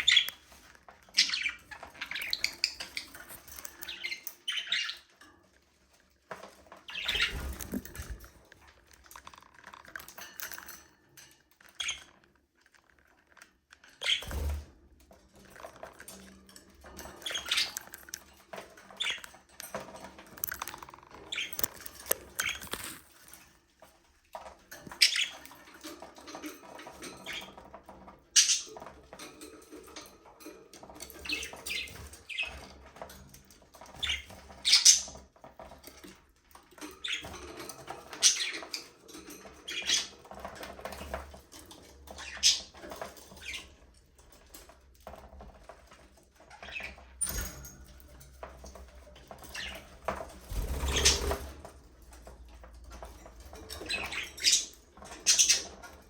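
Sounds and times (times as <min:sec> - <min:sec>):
budgerigars chirping and chattering: 0:00.0 - 0:00.5, 0:01.1 - 0:05.1, 0:06.8 - 0:08.2, 0:17.1 - 0:18.1, 0:19.0 - 0:19.2, 0:20.4 - 0:23.0, 0:24.9 - 0:25.6, 0:28.4 - 0:28.8, 0:31.2 - 0:32.6, 0:33.9 - 0:35.2, 0:37.0 - 0:40.6, 0:42.0 - 0:43.8, 0:46.5 - 0:47.4, 0:49.3 - 0:51.6, 0:53.4 - 0:56.0.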